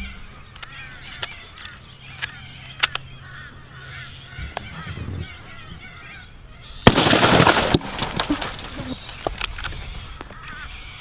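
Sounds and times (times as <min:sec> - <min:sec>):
low hum: 0:00.0 - 0:06.9
geese honking: 0:00.0 - 0:07.0
sharp clicks: 0:00.5 - 0:03.1.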